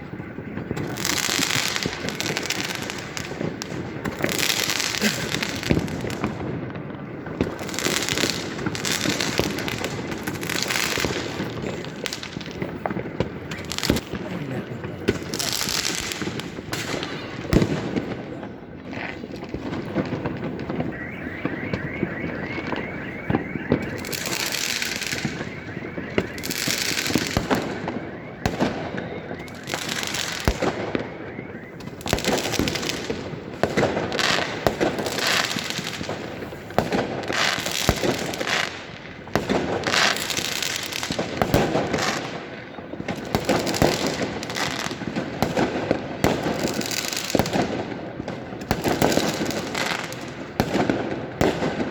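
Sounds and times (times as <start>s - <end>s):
fireworks bangs and crackling: 0.0s - 51.9s.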